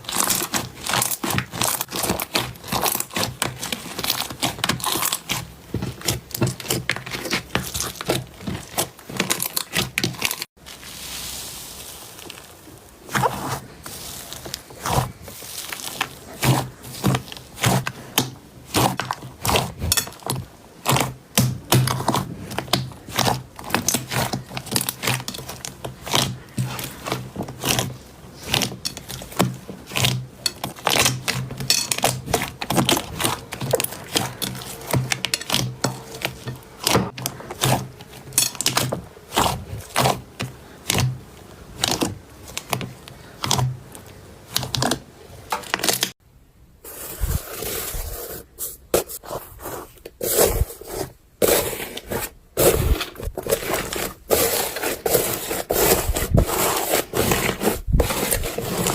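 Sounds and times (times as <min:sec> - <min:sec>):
slime crackling and popping: 0:00.0 - 0:45.0.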